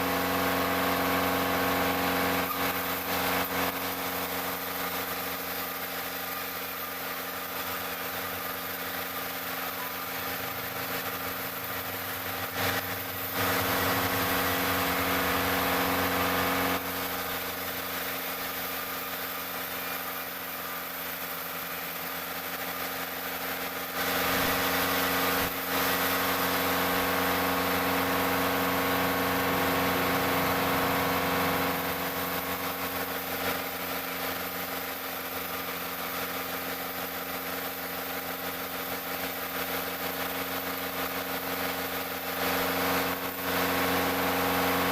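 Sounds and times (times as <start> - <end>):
saw cutting through log: 0.0 - 44.9
sawmill engine running: 0.0 - 44.9.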